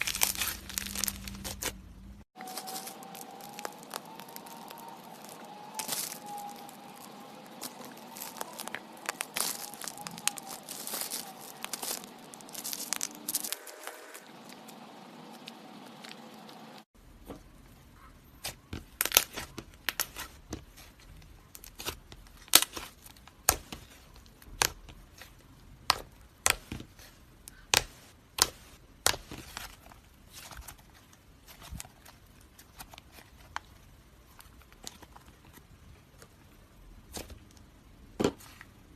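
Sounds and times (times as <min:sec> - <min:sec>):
slime crackling and popping: 0:00.0 - 0:01.8, 0:02.4 - 0:14.2, 0:18.4 - 0:29.7.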